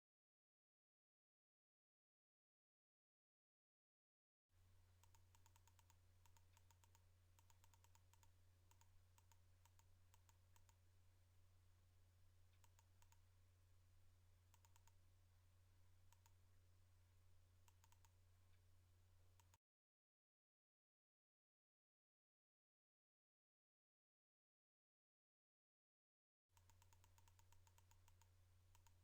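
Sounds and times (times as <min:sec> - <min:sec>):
faint low hum: 0:04.5 - 0:19.6, 0:26.6 - 0:29.0
rapid faint clicks: 0:05.0 - 0:10.8, 0:12.5 - 0:13.3, 0:14.5 - 0:15.0, 0:16.1 - 0:16.4, 0:17.6 - 0:18.6, 0:19.4 - 0:19.6, 0:26.6 - 0:29.0.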